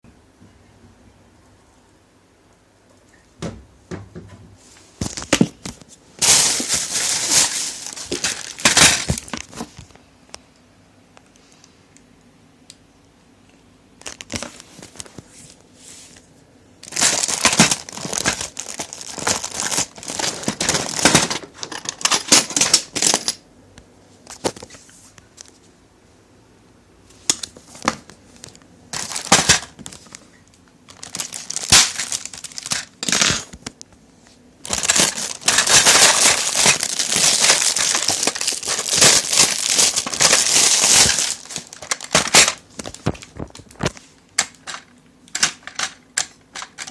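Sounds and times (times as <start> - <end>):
packaging crinkling: 5.0 - 10.0, 14.0 - 15.3, 16.8 - 23.4, 27.2 - 33.8, 34.6 - 44.8.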